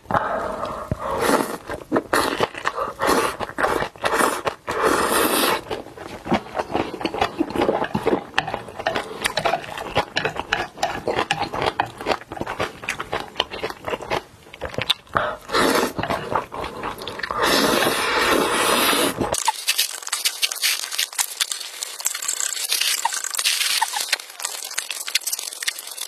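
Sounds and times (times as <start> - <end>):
wet chewing: 0.6 - 26.0.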